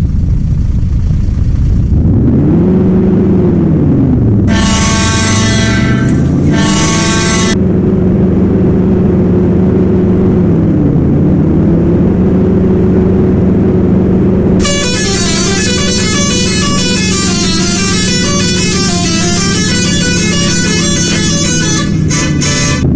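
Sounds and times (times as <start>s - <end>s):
multi-tone musical bus horn: 4.5s - 7.7s, 14.6s - 22.9s.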